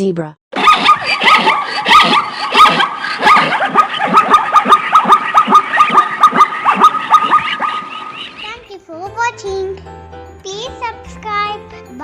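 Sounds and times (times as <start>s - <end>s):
zebra yelping barks: 0.6s - 8.7s.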